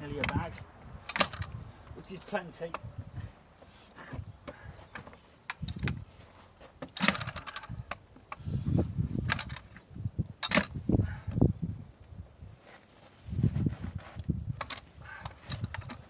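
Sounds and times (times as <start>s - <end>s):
objects clinking and thumping: 6.8s - 7.8s
rattling metallic clinks: 7.0s - 7.8s.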